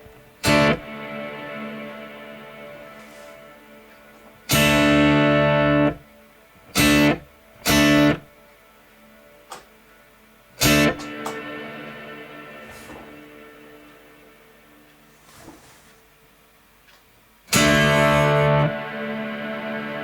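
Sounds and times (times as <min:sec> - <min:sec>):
frozen guitar chord: 0:00.0 - 0:06.0, 0:06.7 - 0:08.3, 0:10.6 - 0:14.7, 0:17.5 - 0:20.0
electric guitar chord reverb tail: 0:04.5 - 0:06.0, 0:17.5 - 0:20.0.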